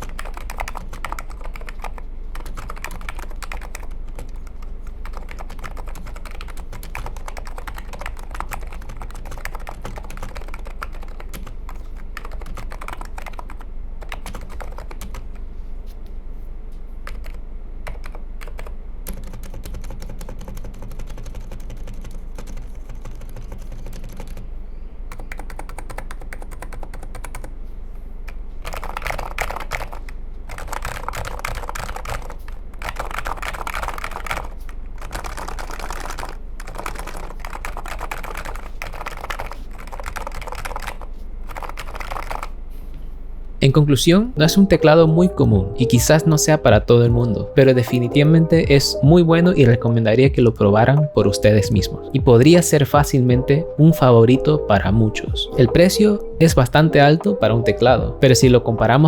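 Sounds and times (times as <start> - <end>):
keyboard typing: 0.0 - 15.4, 17.0 - 24.4, 25.1 - 27.5, 28.3 - 42.6.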